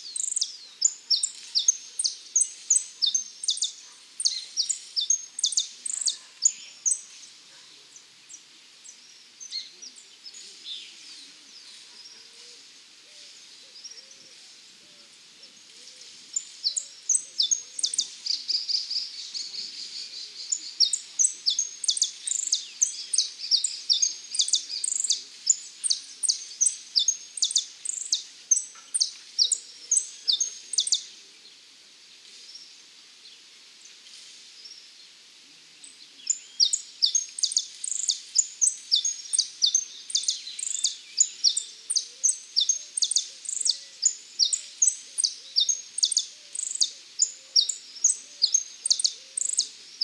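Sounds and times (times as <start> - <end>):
finch singing high chirps: 0.1 - 7.1, 16.4 - 31.1, 36.2 - 50.0.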